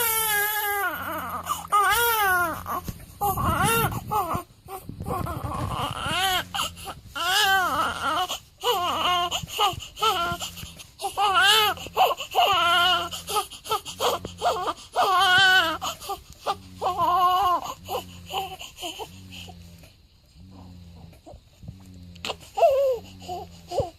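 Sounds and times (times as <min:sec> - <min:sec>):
newborn baby crying: 0:00.0 - 0:19.1.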